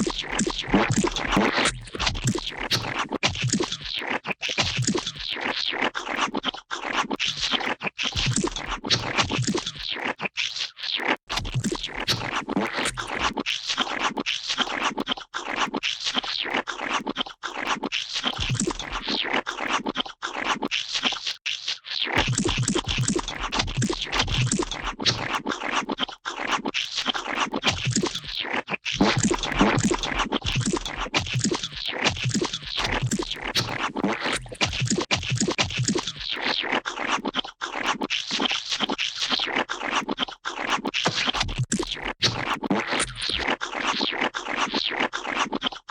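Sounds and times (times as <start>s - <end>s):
wet squelching slime: 0.0s - 10.2s, 22.2s - 45.8s.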